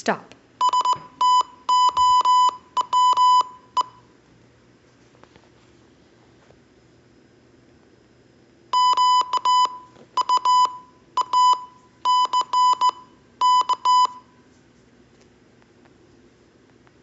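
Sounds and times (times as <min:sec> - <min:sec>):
morse code beeps: 0:00.6 - 0:04.0, 0:08.8 - 0:14.3.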